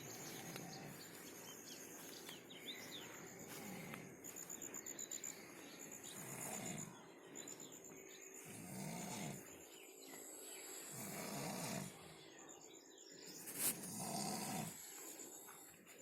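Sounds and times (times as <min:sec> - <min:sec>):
low snores: 0:03.3 - 0:04.2, 0:05.9 - 0:07.0, 0:08.4 - 0:09.6, 0:10.3 - 0:12.2, 0:13.6 - 0:15.5.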